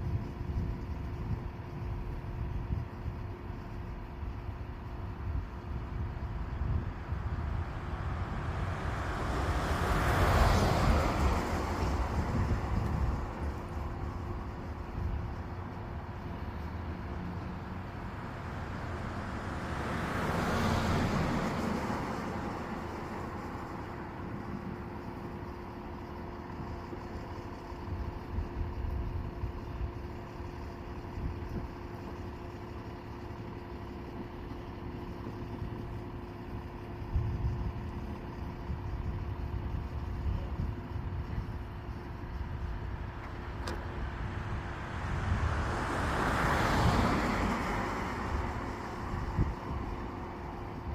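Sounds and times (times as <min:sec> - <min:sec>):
steady engine hum: 0:00.0 - 0:50.9
vehicle passing: 0:06.4 - 0:14.6, 0:16.9 - 0:24.6, 0:42.8 - 0:50.9.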